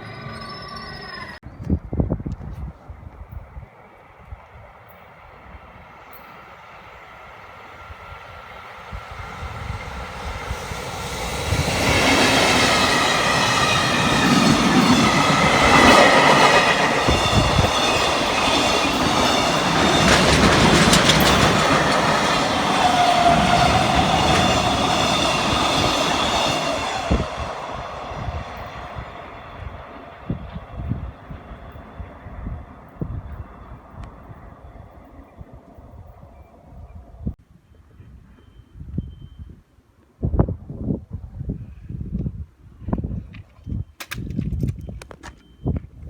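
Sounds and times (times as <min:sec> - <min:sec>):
freight train passing: 0:00.0 - 0:01.4, 0:03.5 - 0:37.4.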